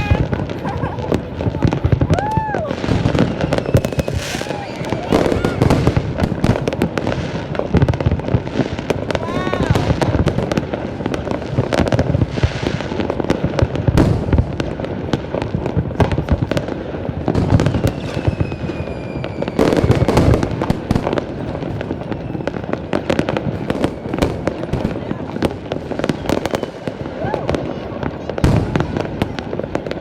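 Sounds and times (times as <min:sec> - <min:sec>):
fireworks bangs and crackling: 0:00.0 - 0:30.0
whistling firework shell: 0:02.0 - 0:06.0, 0:17.7 - 0:20.8, 0:21.8 - 0:24.7, 0:26.1 - 0:27.2.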